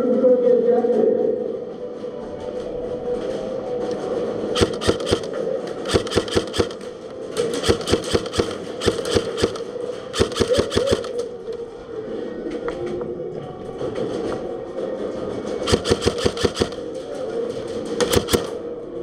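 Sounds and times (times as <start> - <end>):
airsoft rifle shots: 4.6 - 11.3, 15.6 - 17.0, 18.0 - 18.7.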